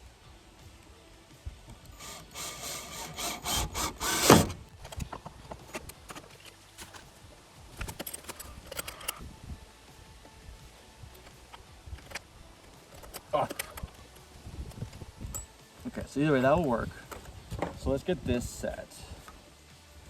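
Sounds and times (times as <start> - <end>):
rubbing and scraping on wood: 1.9 - 4.7.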